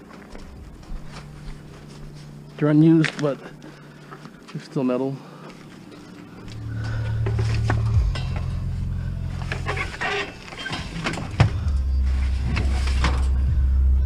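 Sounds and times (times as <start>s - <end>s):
vehicle engine running: 6.5s - 9.8s
metal pieces clanking and rattling: 9.5s - 11.4s.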